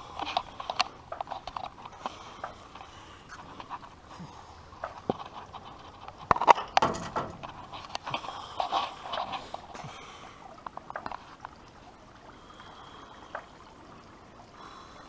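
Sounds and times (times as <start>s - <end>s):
loud knocks: 6.6s - 7.6s.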